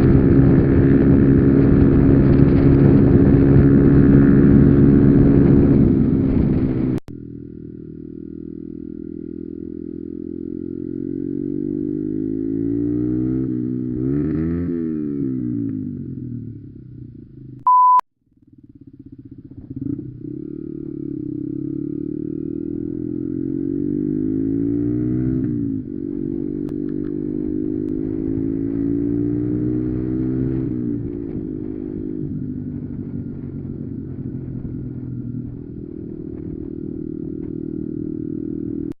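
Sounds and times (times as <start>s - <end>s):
motorcycle accelerating: 0.0s - 17.6s, 18.3s - 39.0s
loud steady beep: 17.6s - 18.0s.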